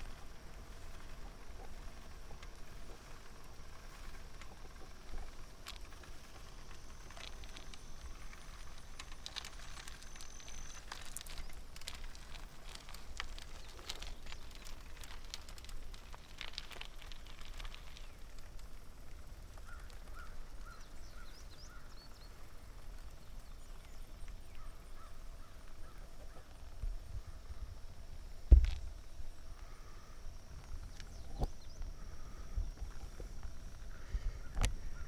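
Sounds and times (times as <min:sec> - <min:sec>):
low wind: 0:00.0 - 0:35.0
trike rolling rumble: 0:00.0 - 0:35.0
bird chirping: 0:19.6 - 0:27.8.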